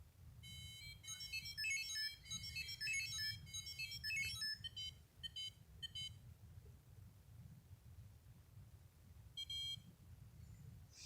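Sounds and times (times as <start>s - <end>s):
electronic beeper tune: 0.5s - 4.6s
short beeps: 0.5s - 6.1s, 9.4s - 9.8s.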